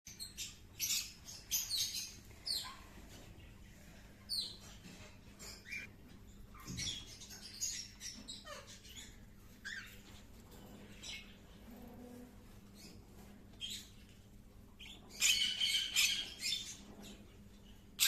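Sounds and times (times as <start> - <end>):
parrots chirping: 0.1 - 3.5, 4.3 - 10.2, 14.8 - 18.0.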